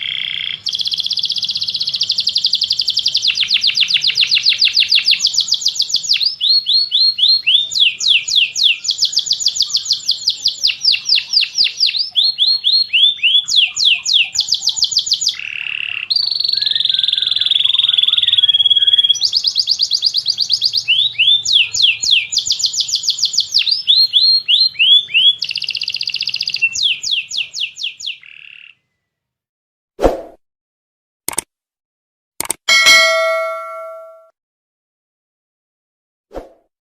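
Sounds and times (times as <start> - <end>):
canary singing trills: 0.0 - 28.9.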